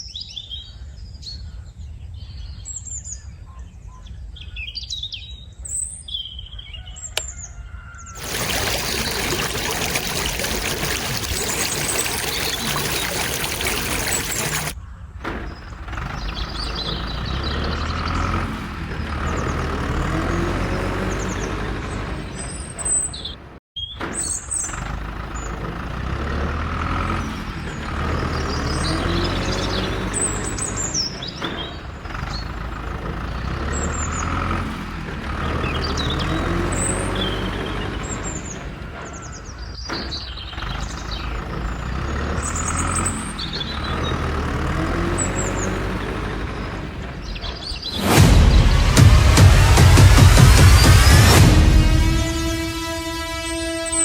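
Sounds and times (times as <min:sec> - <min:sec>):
birds chirping: 0:08.1 - 0:25.6, 0:35.5 - 0:48.1
tractor engine running: 0:08.2 - 0:22.9, 0:24.5 - 0:39.3, 0:40.0 - 0:54.0.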